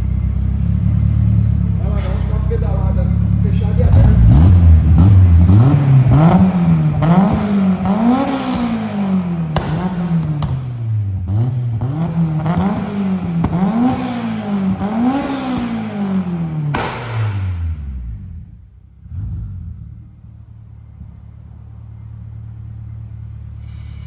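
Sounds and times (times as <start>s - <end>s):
car engine revving: 0.0s - 23.6s.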